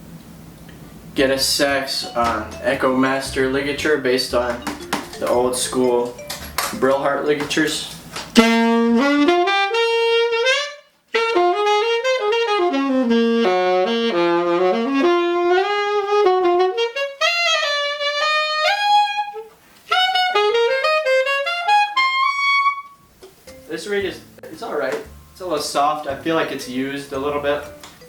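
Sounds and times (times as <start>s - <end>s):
saxophone playing jazz phrases: 1.0s - 23.1s.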